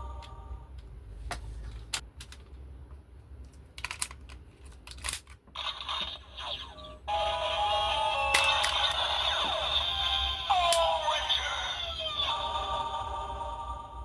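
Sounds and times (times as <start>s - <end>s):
toy gun plastic clicks: 3.8s - 5.4s
electronic toy sound effect: 5.6s - 13.6s.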